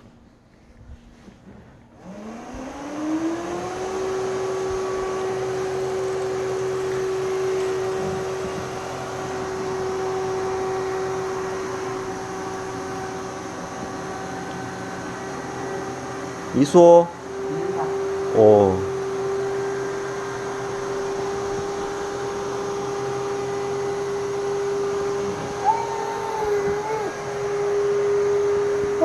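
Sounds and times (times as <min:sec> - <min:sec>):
robot vacuum motor whirring: 0:02.0 - 0:16.0, 0:23.8 - 0:28.9.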